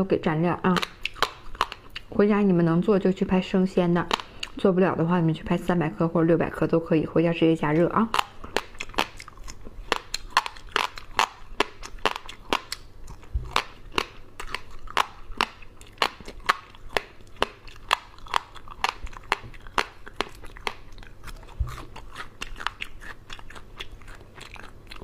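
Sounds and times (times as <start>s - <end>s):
wet chewing: 0.6s - 2.2s, 3.7s - 4.7s, 7.6s - 25.0s
crunching fried insects: 7.7s - 25.0s.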